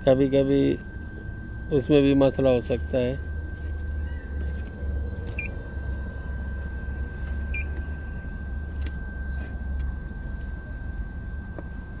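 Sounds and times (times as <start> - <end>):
short electronic beep: 5.3 - 5.6, 7.4 - 7.7.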